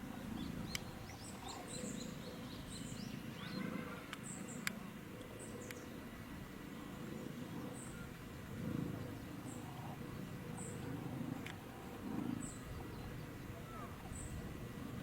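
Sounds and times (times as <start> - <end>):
steady low rumble: 0.0 - 15.0
small birds chirping: 0.1 - 6.2.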